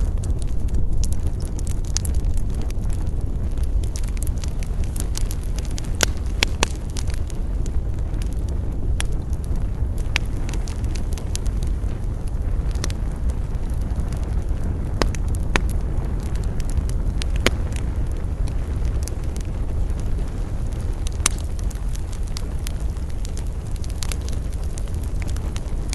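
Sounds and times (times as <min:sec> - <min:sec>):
burning wood crackling and popping: 0:00.0 - 0:25.9
campfire rumble: 0:00.0 - 0:25.9.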